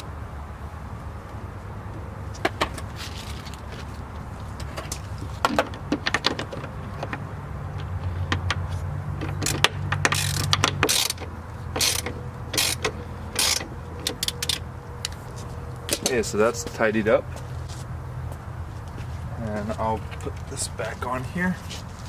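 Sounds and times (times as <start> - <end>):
cable ties ratcheting: 9.2 - 15.2.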